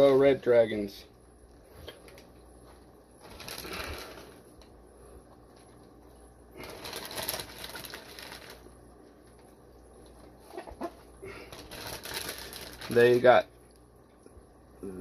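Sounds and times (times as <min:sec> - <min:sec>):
plastic bags rustling: 0:03.2 - 0:04.6, 0:06.5 - 0:08.8, 0:10.5 - 0:13.4.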